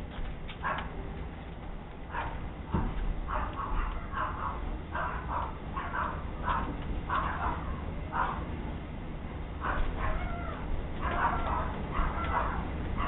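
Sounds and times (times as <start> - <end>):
animal crying: 3.3 - 8.5, 9.6 - 13.0.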